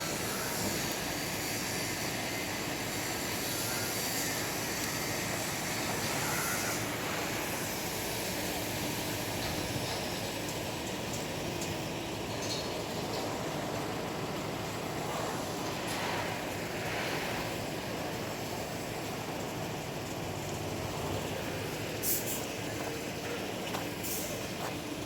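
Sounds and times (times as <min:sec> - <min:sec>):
crane diesel engine running: 0:00.0 - 0:25.0.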